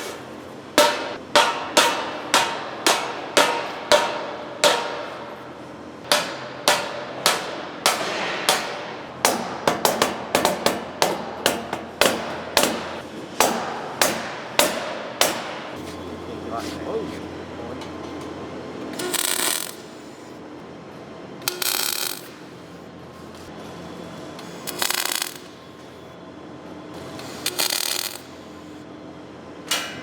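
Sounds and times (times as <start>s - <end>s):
hammer striking steel: 0.8s - 15.8s, 21.5s - 22.5s.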